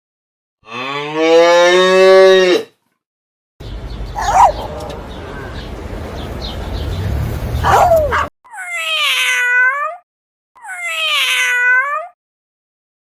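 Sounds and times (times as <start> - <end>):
short calls: 4.1 - 5.2
cat meowing: 4.2 - 4.7, 7.6 - 10.0, 10.6 - 12.2.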